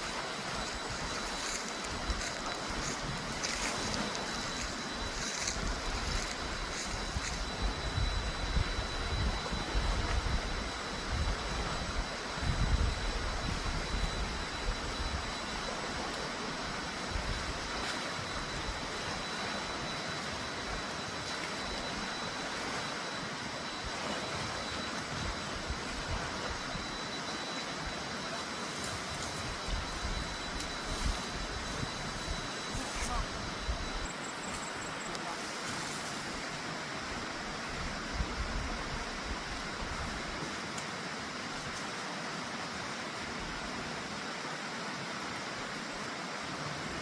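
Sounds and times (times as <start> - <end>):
thin steady high tone: 0.0 - 41.8.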